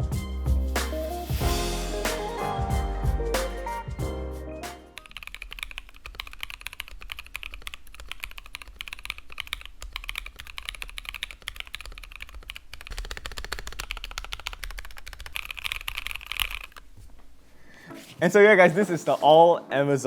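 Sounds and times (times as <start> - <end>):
fast mechanical keyboard typing: 5.0 - 16.8.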